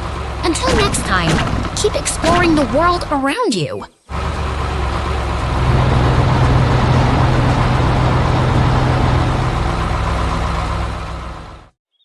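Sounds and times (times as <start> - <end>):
heavy vehicle engine running: 0.0 - 3.4, 4.0 - 11.8.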